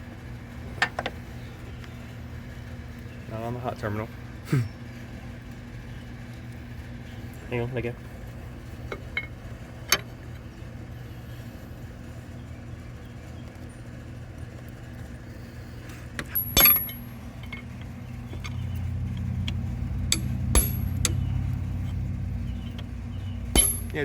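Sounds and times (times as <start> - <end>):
steady low hum: 0.0 - 24.0
hand tools clinking on metal: 16.2 - 21.3, 23.5 - 24.0
sharp ringing metal strike: 16.3 - 17.1, 20.1 - 21.3, 23.6 - 24.0.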